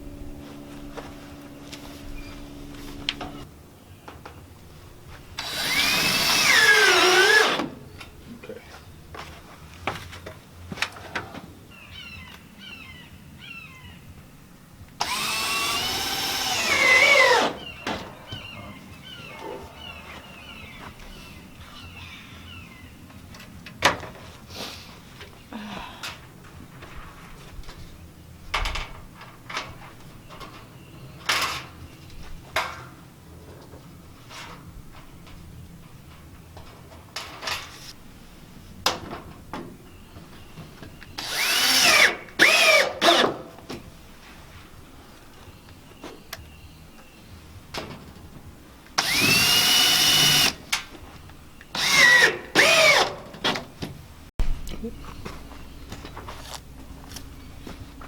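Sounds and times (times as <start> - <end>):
cordless drill whine: 5.4 - 7.7, 15.0 - 17.7, 41.2 - 43.3, 49.0 - 50.6, 51.7 - 53.1.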